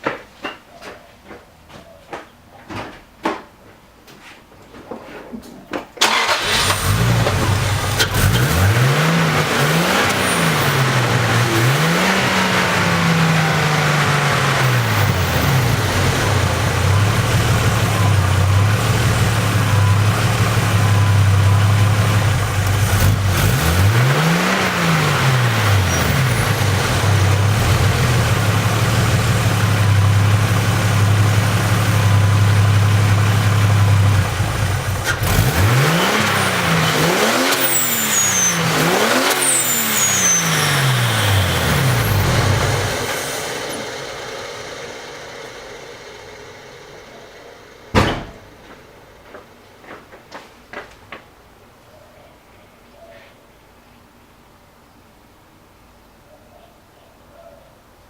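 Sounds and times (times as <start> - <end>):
turbocharged engine revving: 6.0 - 49.2.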